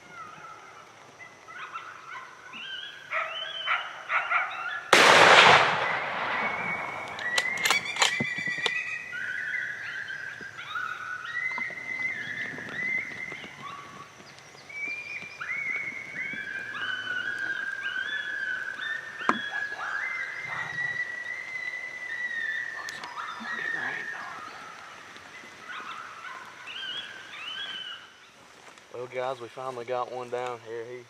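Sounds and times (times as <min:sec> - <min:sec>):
coyotes yipping and howling: 0:00.0 - 0:31.0
rifle shot echoing: 0:04.9 - 0:08.2.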